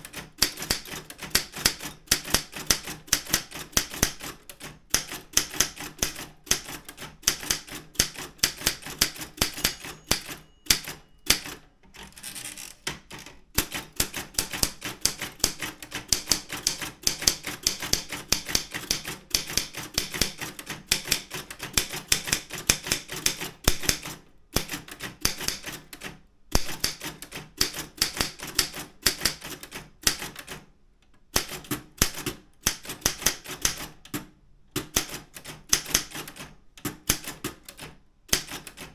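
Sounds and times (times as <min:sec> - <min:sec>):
typewriter key strikes: 0:00.0 - 0:30.6, 0:31.4 - 0:38.9.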